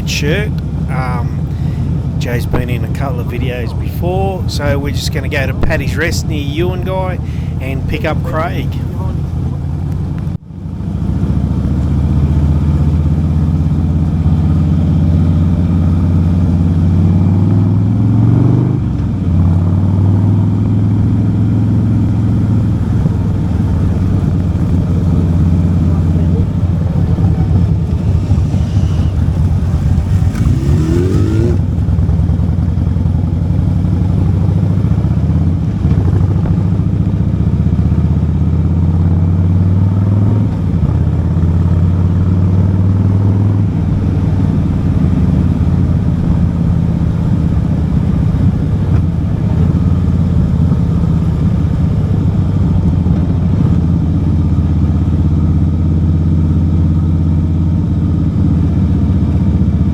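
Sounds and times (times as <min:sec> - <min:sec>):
motorcycle engine: 0:00.0 - 0:59.9.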